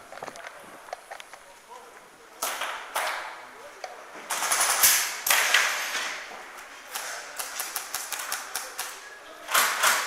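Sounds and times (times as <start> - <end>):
airsoft guns firing: 4.3 - 6.2, 6.9 - 10.0.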